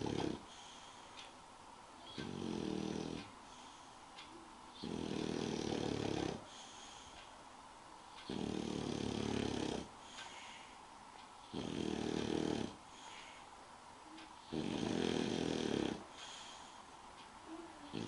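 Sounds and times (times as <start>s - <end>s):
dog snoring: 0.0s - 0.8s, 2.1s - 3.7s, 4.7s - 7.0s, 8.2s - 9.9s, 11.4s - 13.2s, 14.4s - 16.7s
dog breathing: 0.0s - 1.3s, 4.7s - 7.3s, 8.1s - 10.8s, 14.4s - 17.0s.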